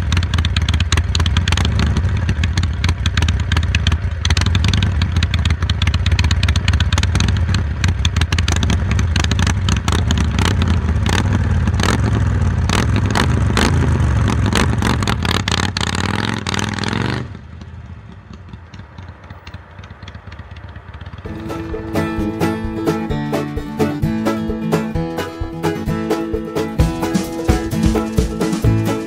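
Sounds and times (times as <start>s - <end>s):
motorcycle engine running loud: 0.0s - 22.8s.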